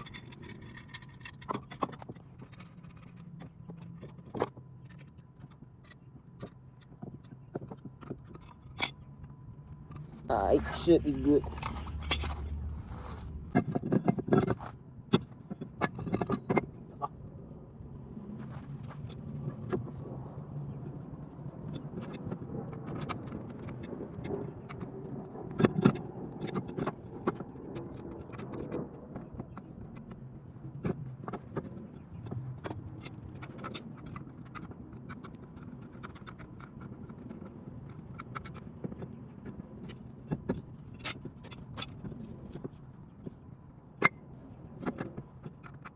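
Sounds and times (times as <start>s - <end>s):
metal tools clinking and scraping: 10.3s - 13.6s.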